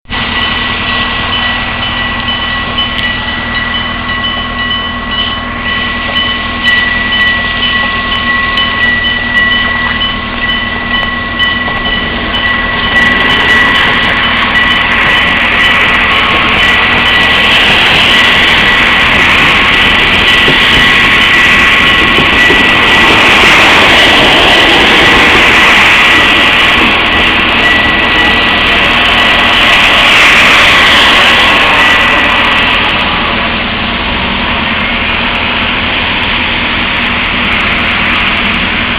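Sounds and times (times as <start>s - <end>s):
electric train passing: 0.1s - 38.9s
level crossing bell ringing: 0.3s - 19.0s.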